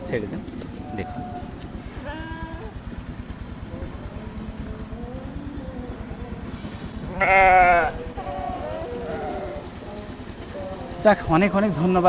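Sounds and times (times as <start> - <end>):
sheep bleating: 7.1 - 9.7.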